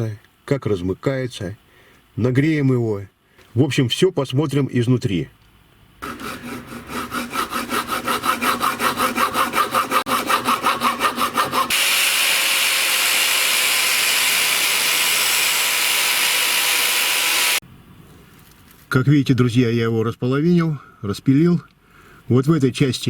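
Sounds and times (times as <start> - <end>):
saw cutting metal: 6.0 - 17.6.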